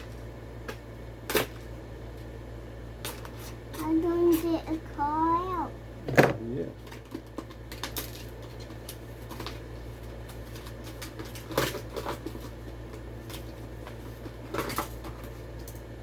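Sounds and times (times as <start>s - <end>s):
steady low hum: 0.0s - 16.0s
plastic packaging clicks and crinkles: 6.8s - 15.9s.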